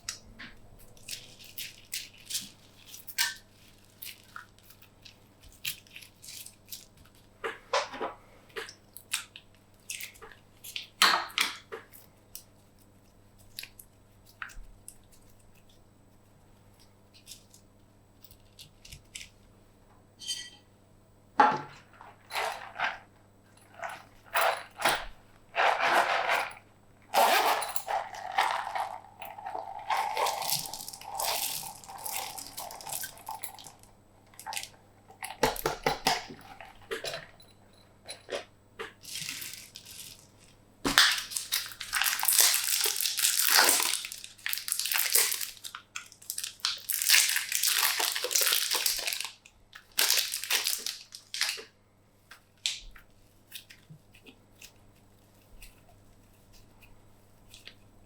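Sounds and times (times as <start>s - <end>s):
hands squishing slime: 28.0s - 33.8s.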